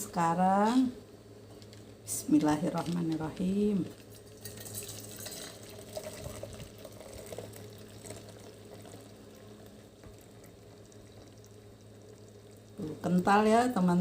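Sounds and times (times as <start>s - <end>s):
liquid trickling: 3.8s - 13.8s.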